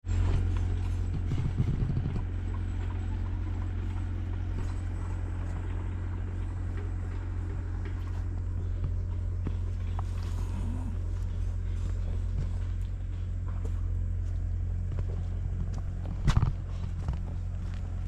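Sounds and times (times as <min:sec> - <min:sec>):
steady low rumble: 0:00.0 - 0:18.0
footsteps on park path: 0:03.7 - 0:18.0.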